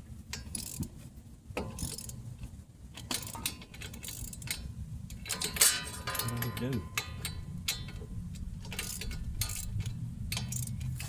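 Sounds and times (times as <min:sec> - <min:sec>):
socket wrench and sockets clinking: 0:03.0 - 0:11.0.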